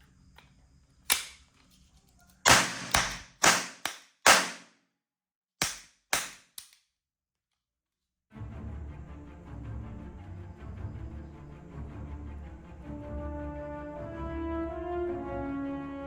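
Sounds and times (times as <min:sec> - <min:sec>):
toy guns firing: 0:01.1 - 0:01.4, 0:02.4 - 0:04.7, 0:05.6 - 0:06.8.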